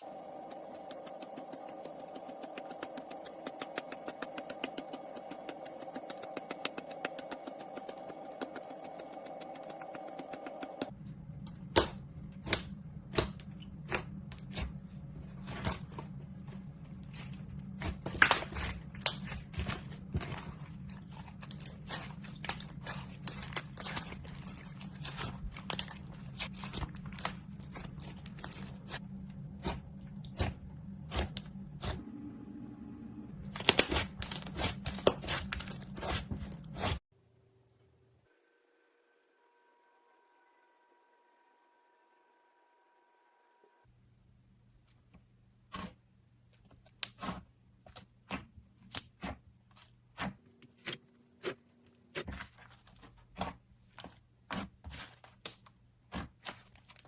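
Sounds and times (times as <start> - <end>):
steady low hum: 0.0 - 41.5.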